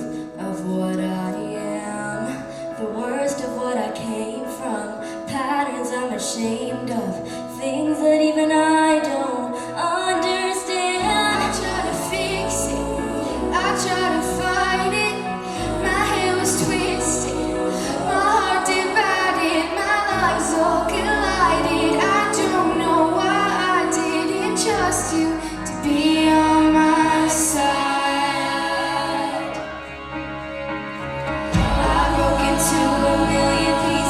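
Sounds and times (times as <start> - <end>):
young singers in unison: 9.8 - 30.1, 31.4 - 34.0
backing track with bass: 11.0 - 29.3, 30.3 - 34.0.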